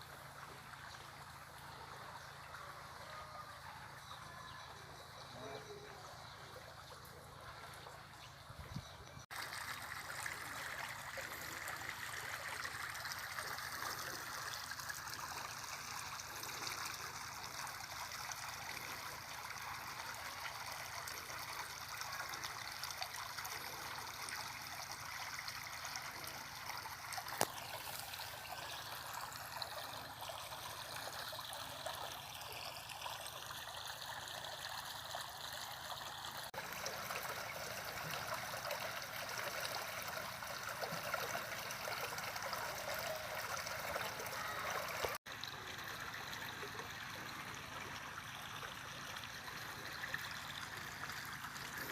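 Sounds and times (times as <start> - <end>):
water gushing from hose: 9.3 - 51.9.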